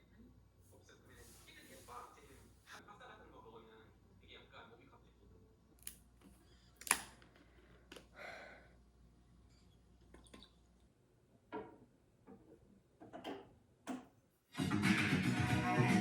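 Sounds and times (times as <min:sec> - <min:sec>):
guitar background music: 0:14.6 - 0:16.0.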